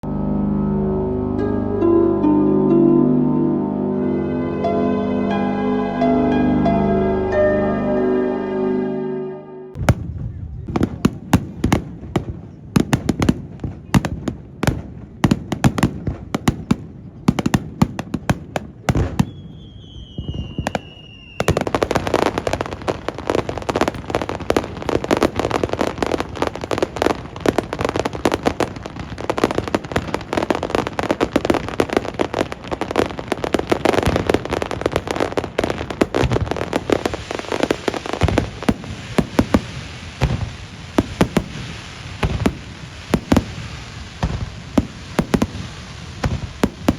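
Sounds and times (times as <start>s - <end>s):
firework bursts: 17.6s - 46.9s
falling firework whistle: 19.0s - 26.9s, 31.8s - 46.9s
crackling barrage of bangs: 20.2s - 46.9s.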